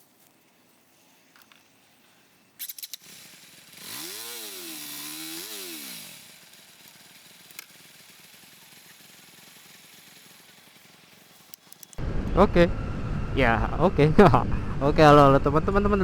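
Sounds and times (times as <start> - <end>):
motorcycle engine revving: 2.8 - 13.2
sharp clicks: 6.8 - 7.8, 11.4 - 12.0.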